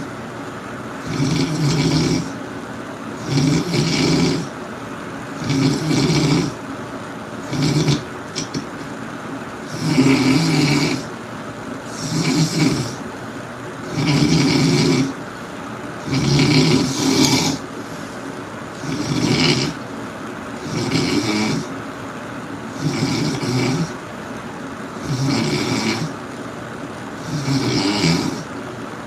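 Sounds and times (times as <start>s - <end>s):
loud snoring: 1.0s - 2.4s, 3.2s - 4.5s, 5.4s - 6.6s, 7.4s - 8.7s, 9.6s - 11.1s, 11.9s - 13.0s, 13.8s - 15.2s, 16.0s - 17.7s, 18.7s - 19.8s, 20.6s - 21.8s, 22.7s - 24.0s, 25.0s - 26.2s, 27.2s - 28.5s.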